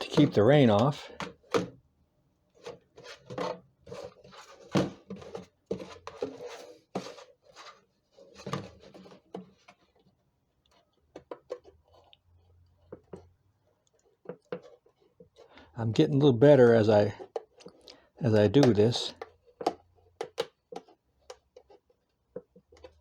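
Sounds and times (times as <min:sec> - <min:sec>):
plastic container scraping: 0:02.6 - 0:10.0.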